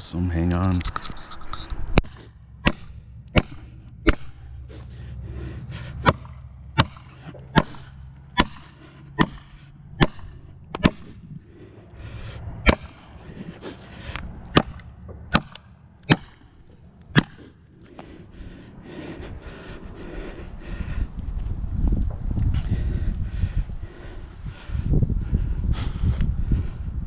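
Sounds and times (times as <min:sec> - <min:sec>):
low steady rumble: 0:00.0 - 0:27.0
hammer striking metal wedges: 0:02.0 - 0:04.6, 0:06.0 - 0:11.4, 0:12.6 - 0:13.2, 0:14.5 - 0:17.7.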